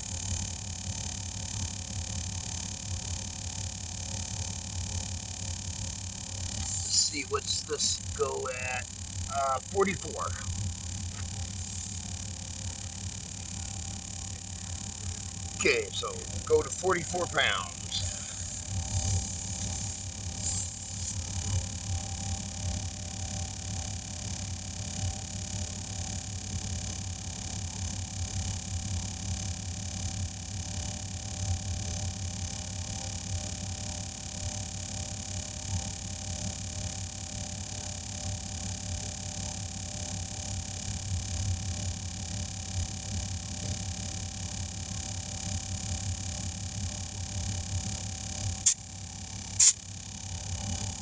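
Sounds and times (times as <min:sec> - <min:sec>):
air compressor humming: 0:06.4 - 0:21.6, 0:48.2 - 0:51.0
air hissing into tire: 0:49.6 - 0:49.8.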